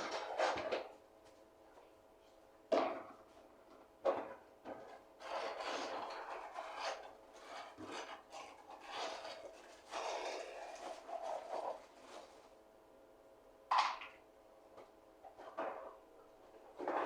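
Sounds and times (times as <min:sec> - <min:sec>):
hands rubbing and scraping food: 0:05.2 - 0:12.5.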